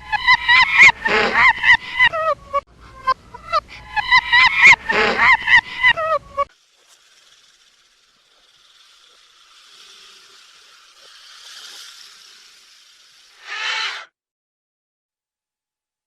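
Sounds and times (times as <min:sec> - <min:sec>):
snake hissing: 0:06.4 - 0:14.1.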